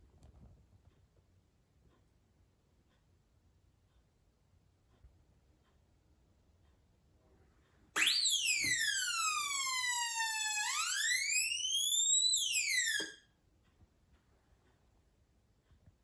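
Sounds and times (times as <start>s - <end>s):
electronic police siren wailing: 8.0s - 13.2s.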